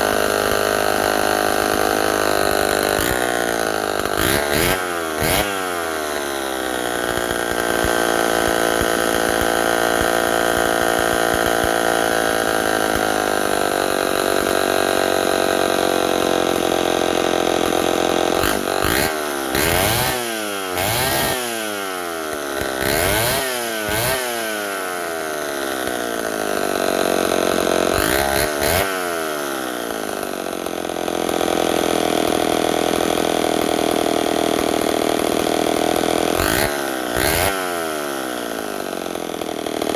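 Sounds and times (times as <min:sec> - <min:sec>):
chainsaw idling and revving: 0:00.0 - 0:39.9.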